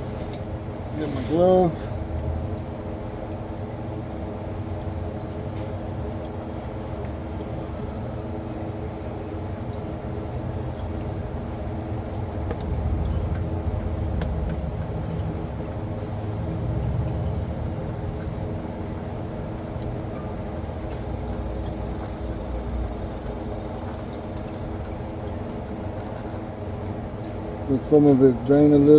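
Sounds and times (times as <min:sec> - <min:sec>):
mechanical hum: 0:00.0 - 0:28.9
low rumble: 0:11.2 - 0:25.0.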